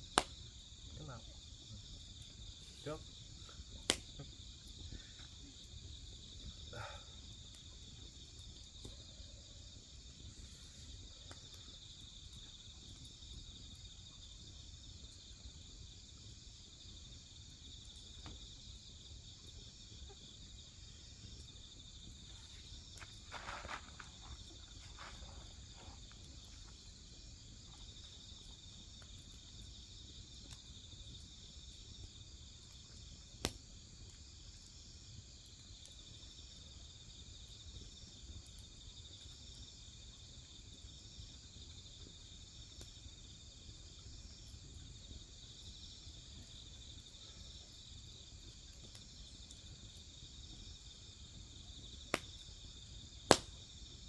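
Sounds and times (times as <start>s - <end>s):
burning firewood popping: 0.0s - 15.3s, 16.6s - 29.8s, 32.3s - 34.4s, 46.5s - 54.0s
crickets chirping: 0.0s - 54.0s.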